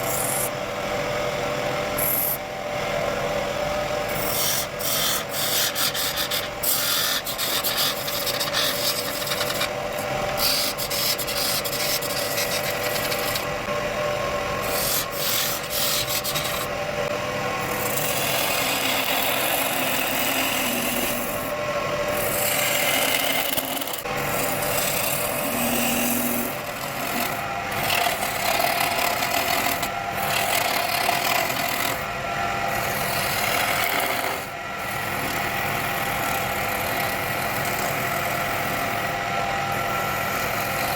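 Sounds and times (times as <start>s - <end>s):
turning tool scraping wood: 0.0s - 0.5s, 4.1s - 13.6s, 14.6s - 16.7s, 17.6s - 21.5s, 22.1s - 32.0s, 32.8s - 35.3s
wood lathe humming: 0.0s - 40.9s.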